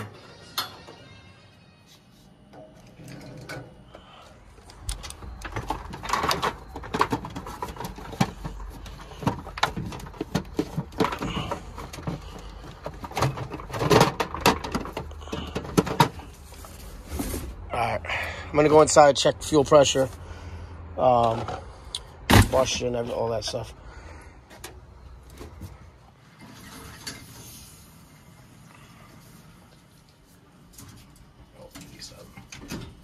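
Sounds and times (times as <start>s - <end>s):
hand tools knocking and clattering: 4.9s - 16.3s.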